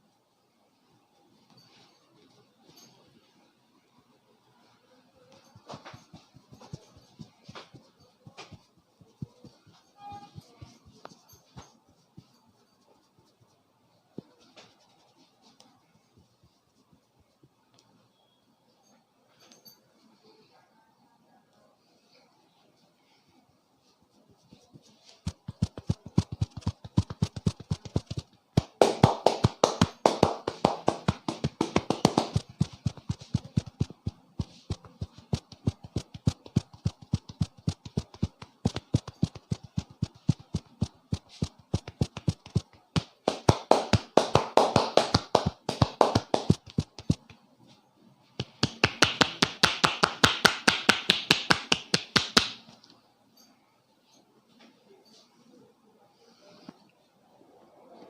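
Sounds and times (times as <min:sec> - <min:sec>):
hands tapping and slapping head: 0:25.2 - 0:47.4, 0:48.4 - 0:52.7.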